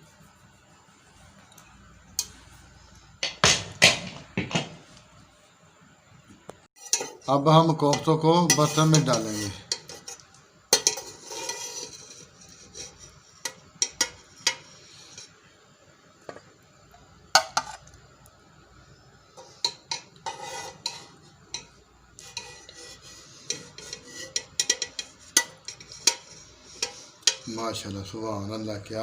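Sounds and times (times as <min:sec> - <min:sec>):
metal spoon clinking on pot: 0:06.8 - 0:07.3, 0:07.9 - 0:11.6, 0:13.4 - 0:14.7, 0:23.5 - 0:27.5.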